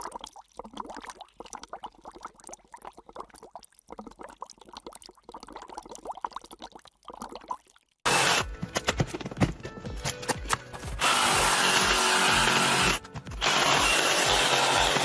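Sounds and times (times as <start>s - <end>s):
water trickling and splashing: 0.0s - 8.1s.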